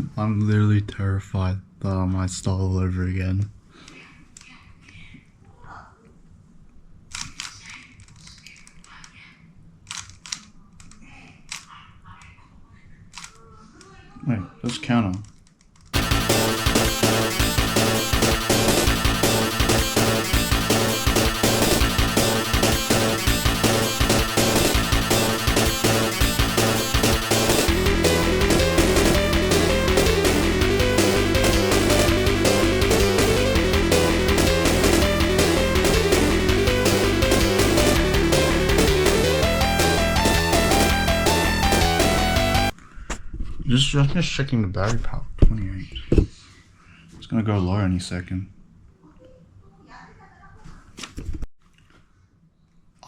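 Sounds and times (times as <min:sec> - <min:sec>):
puzzle cube plastic clicking: 0:07.1 - 0:09.0, 0:09.9 - 0:11.7, 0:15.1 - 0:16.0
video game music with beat: 0:16.0 - 0:42.8.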